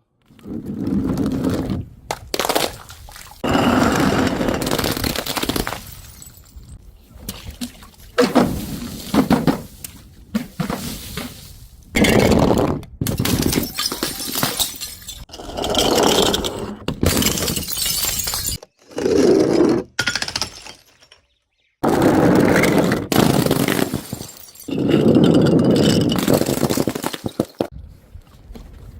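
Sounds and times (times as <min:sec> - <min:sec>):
broken glass crunching and scraping: 0:03.4 - 0:06.8, 0:13.1 - 0:15.4, 0:17.0 - 0:18.8, 0:20.0 - 0:21.4, 0:23.1 - 0:27.7
glass bottles shattering: 0:04.6 - 0:06.8, 0:13.1 - 0:15.8, 0:17.0 - 0:18.7, 0:20.0 - 0:21.4, 0:23.2 - 0:27.7.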